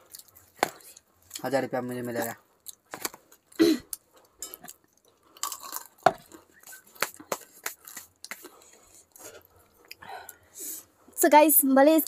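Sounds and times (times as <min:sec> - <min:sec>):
food being bitten and chewed: 0:00.0 - 0:01.6, 0:02.5 - 0:10.5.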